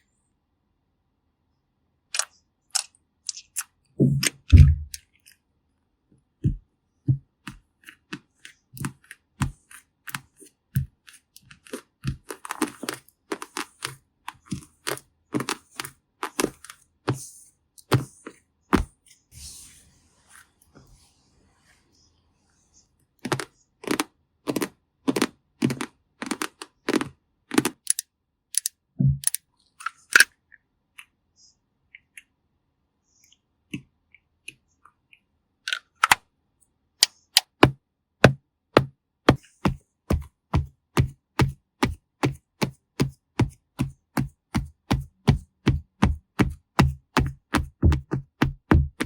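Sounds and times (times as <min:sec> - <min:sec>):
crisp rhythmic tapping: 0:37.5 - 0:49.0.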